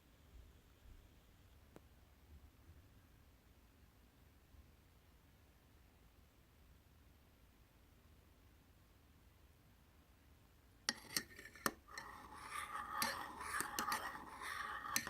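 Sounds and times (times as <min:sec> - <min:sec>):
scraping and rustling: 0:10.9 - 0:15.0.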